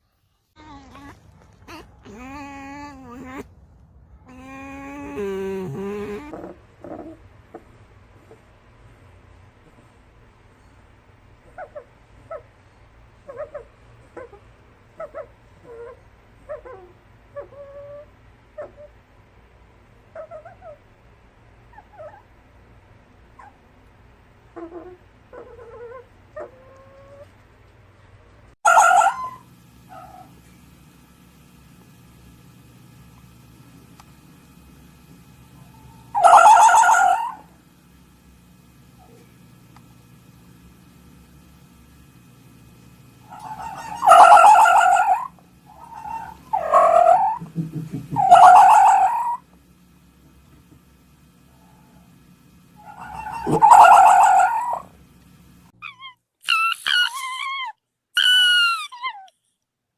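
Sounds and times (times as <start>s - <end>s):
fox yelping calls: 0.9s - 3.5s, 28.6s - 30.3s, 35.8s - 37.5s, 43.3s - 47.5s, 48.2s - 49.4s, 52.8s - 54.9s, 55.8s - 59.4s
fox scream-like call: 36.1s - 37.5s, 43.3s - 47.4s, 48.2s - 49.4s, 52.8s - 54.9s, 55.8s - 59.3s.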